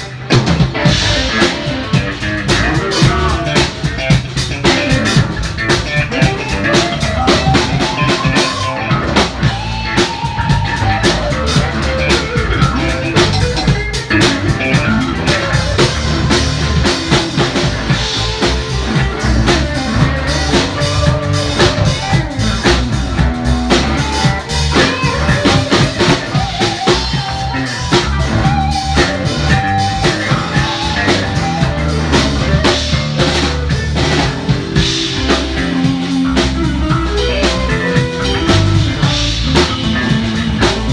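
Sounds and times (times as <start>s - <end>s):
loud band music: 0.0s - 40.9s
person singing: 2.5s - 4.0s.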